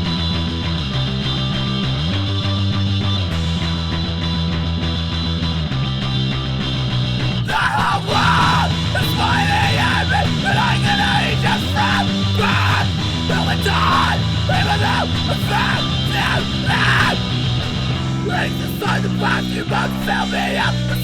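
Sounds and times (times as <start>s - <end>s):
distorted rock guitar chords: 0.0s - 21.0s
person yelling vocals: 7.5s - 17.3s, 18.2s - 21.0s.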